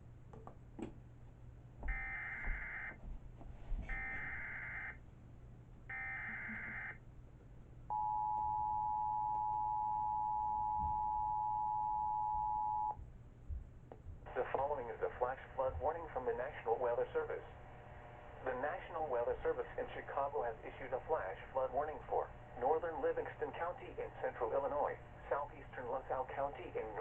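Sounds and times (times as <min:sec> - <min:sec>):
loud two-tone attention signal: 0:03.9 - 0:05.0, 0:07.9 - 0:13.0.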